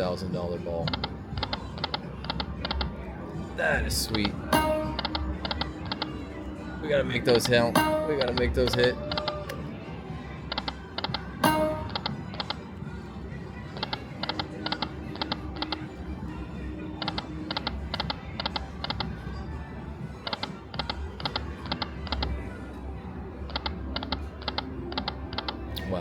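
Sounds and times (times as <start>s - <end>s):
casino background noise: 0.0s - 26.0s
slot machine music: 0.8s - 9.1s, 10.8s - 18.8s.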